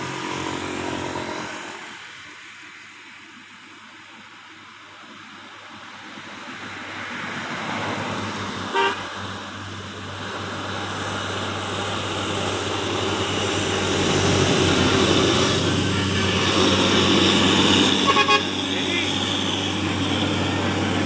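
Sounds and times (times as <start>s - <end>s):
bus engine and tyre noise: 0.0s - 21.0s
bus horn toot: 8.7s - 9.1s, 17.8s - 19.1s.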